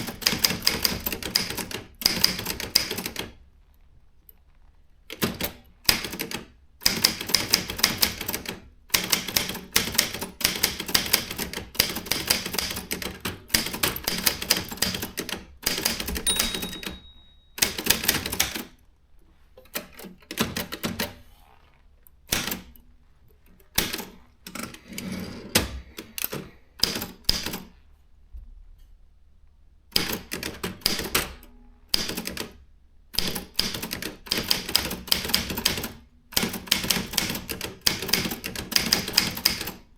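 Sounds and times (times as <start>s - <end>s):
typewriter key strikes: 9.0s - 18.7s
typewriter bell ring: 16.2s - 18.3s.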